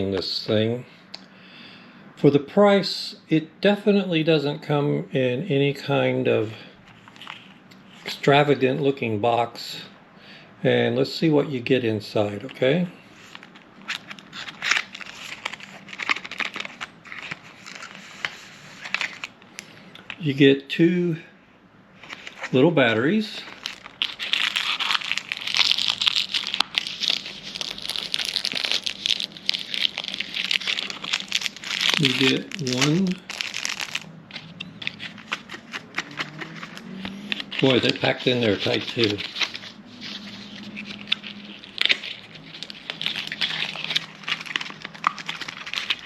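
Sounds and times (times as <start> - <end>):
packaging crinkling and rustling: 13.2 - 20.2, 22.0 - 22.6, 23.4 - 46.0.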